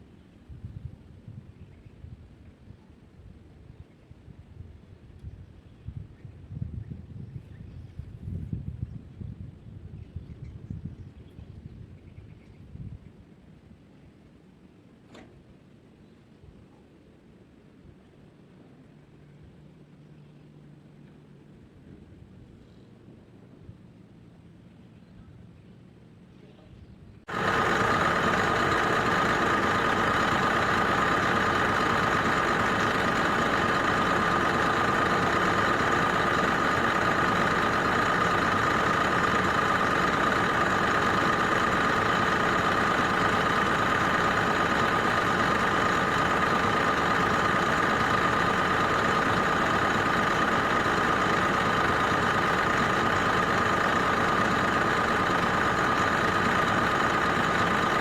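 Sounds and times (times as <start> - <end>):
diesel engine idling with whine: 27.3 - 58.0.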